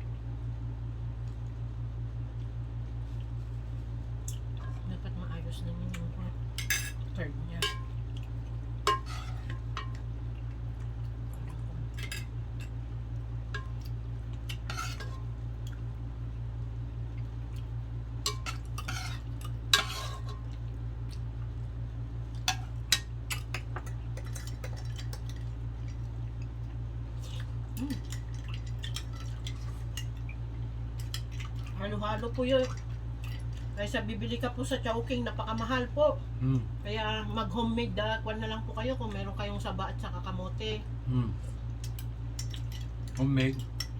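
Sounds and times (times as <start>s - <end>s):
steady low hum: 0.0s - 43.9s.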